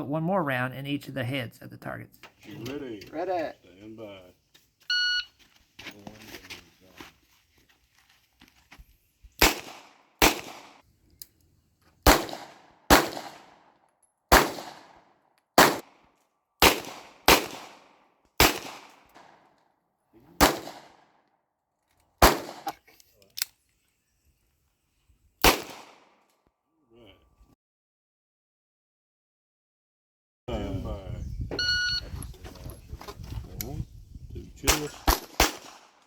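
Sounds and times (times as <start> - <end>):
handgun shots echoing: 9.4 - 10.8, 12.0 - 13.6, 14.3 - 15.0, 15.6 - 15.9, 16.6 - 19.3, 20.4 - 21.0, 22.2 - 22.8, 25.4 - 26.1, 34.7 - 36.0.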